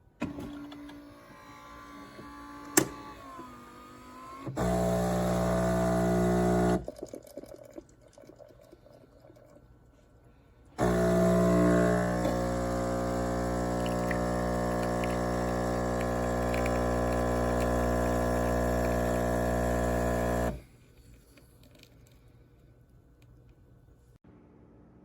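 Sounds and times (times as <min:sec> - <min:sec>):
espresso machine pump humming: 0:01.4 - 0:06.9, 0:10.8 - 0:20.6
liquid flowing: 0:06.8 - 0:09.7, 0:13.1 - 0:19.2.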